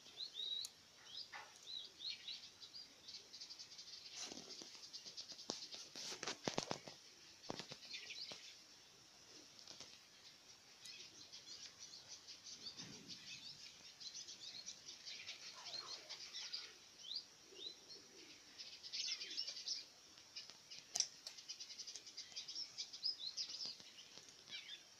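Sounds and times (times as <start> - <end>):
keets peeping: 9.5 - 24.9.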